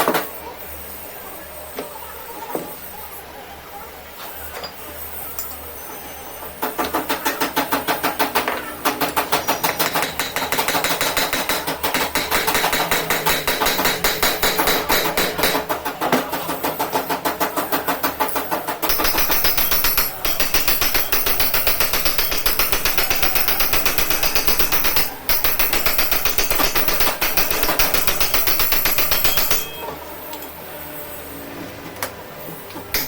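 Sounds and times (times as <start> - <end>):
machine knocking clatter: 6.6 - 29.8.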